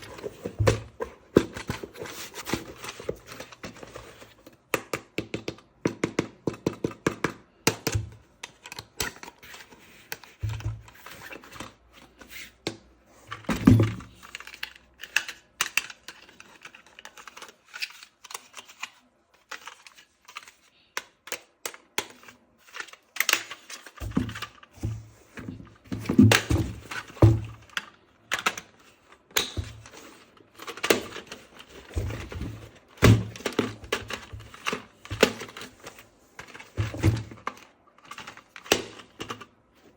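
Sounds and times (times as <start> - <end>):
clicks and taps of hard plastic: 4.6 - 9.2.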